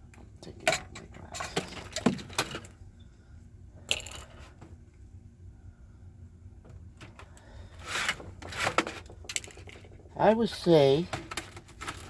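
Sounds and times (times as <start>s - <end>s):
faint low hum: 0.0s - 8.5s
parts scraping and rustling: 7.0s - 10.1s, 11.1s - 12.0s.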